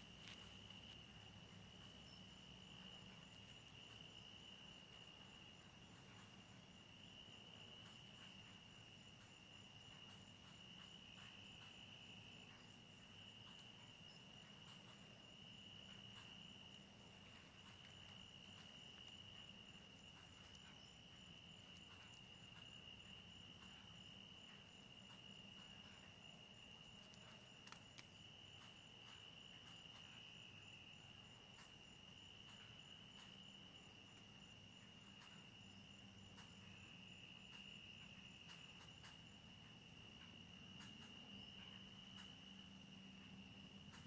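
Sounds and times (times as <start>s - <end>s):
insects trilling: 0.0s - 44.0s
small clicks: 27.0s - 28.1s.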